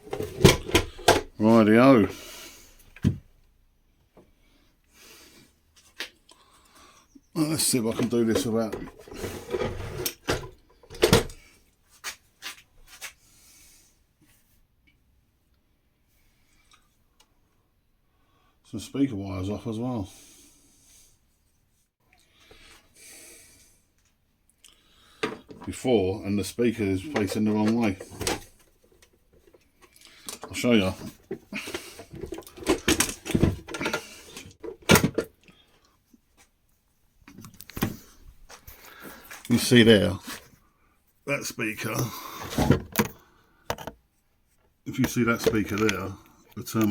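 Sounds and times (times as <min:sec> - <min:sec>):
plastic scraping: 0:07.9 - 0:11.4, 0:26.9 - 0:35.3
plastic housing knocks and clicks: 0:43.7 - 0:44.0.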